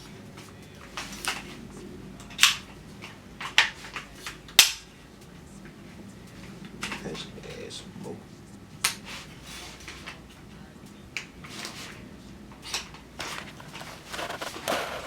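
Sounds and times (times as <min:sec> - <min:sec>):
firearm metallic clicks: 0:02.2 - 0:04.9.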